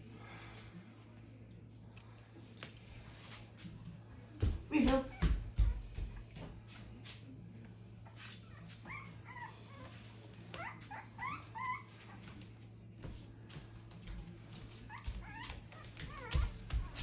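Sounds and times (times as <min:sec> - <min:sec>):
dog whining: 0:08.5 - 0:10.0, 0:10.6 - 0:12.2.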